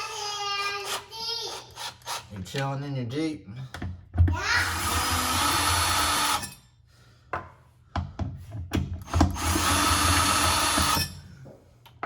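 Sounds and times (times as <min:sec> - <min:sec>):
power drill boring through metal: 0:04.6 - 0:06.6, 0:09.1 - 0:11.2.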